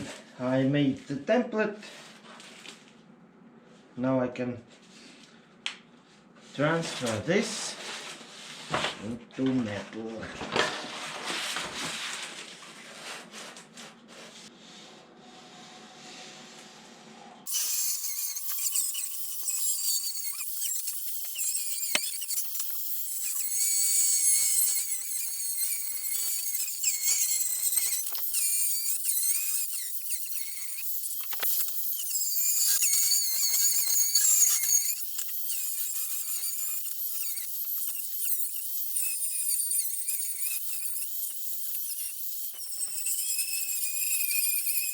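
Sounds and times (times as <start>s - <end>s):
power tool cutting sheet steel: 17.5s - 44.9s.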